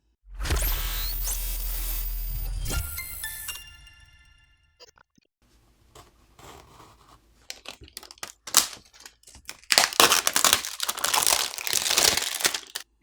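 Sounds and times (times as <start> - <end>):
plastic packaging crinkling: 7.4 - 13.0
plastic wrapping rustling: 7.4 - 13.0.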